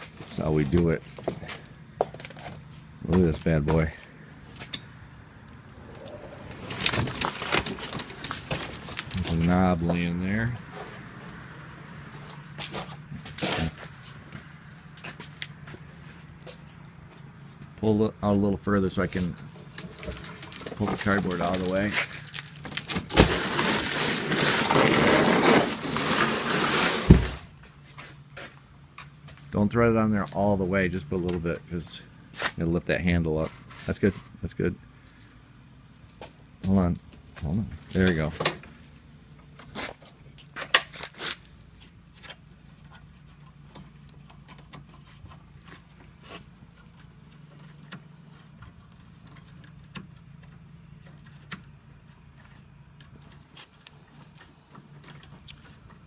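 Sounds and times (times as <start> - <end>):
cardboard rustling and crumpling: 6.0 - 9.8, 19.4 - 27.6
thump: 27.0 - 27.4.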